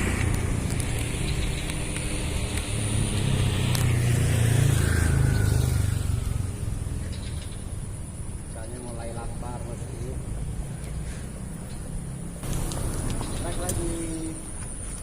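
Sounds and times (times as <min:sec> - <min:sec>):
passing vehicle engine rumble: 0:00.0 - 0:15.0.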